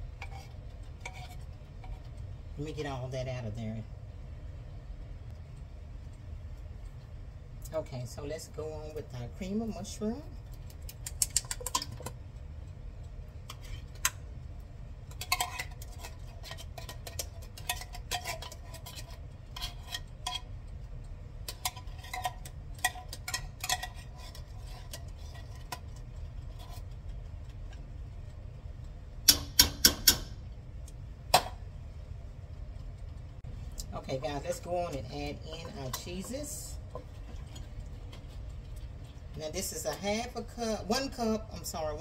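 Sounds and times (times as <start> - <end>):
utensil scraping a can: 15.1 - 20.5, 21.5 - 27.1.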